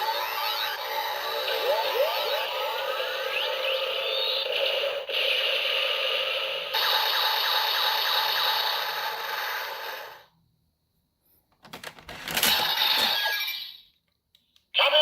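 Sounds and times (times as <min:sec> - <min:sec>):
toy belt electronic rushing noise: 0:00.0 - 0:10.2.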